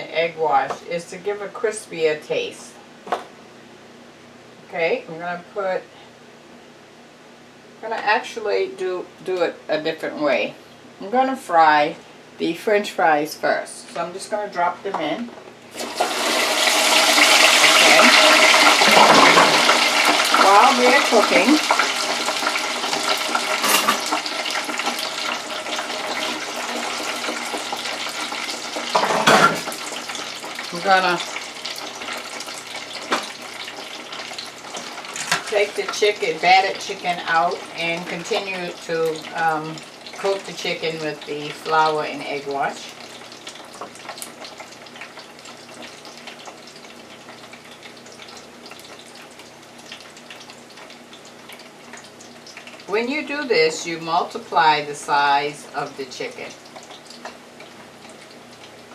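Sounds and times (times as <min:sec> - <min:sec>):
fries sizzling in hot oil: 0:13.4 - 0:58.9.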